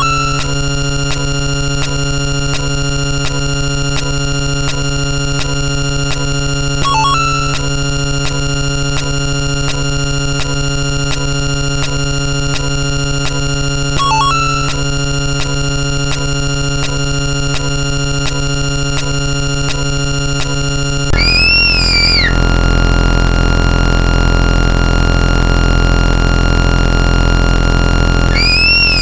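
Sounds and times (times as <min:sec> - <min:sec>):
regular clicks: 0:00.0 - 0:22.7, 0:27.6 - 0:29.0
looping electronic sound effects: 0:00.0 - 0:29.0
low hum: 0:20.9 - 0:29.0.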